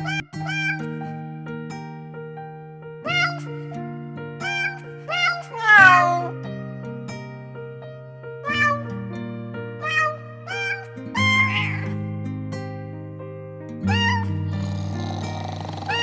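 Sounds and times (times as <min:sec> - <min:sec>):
cat meowing: 0:00.0 - 0:01.0, 0:03.1 - 0:03.6, 0:04.4 - 0:06.4, 0:08.4 - 0:08.9, 0:09.8 - 0:12.0, 0:13.9 - 0:16.0.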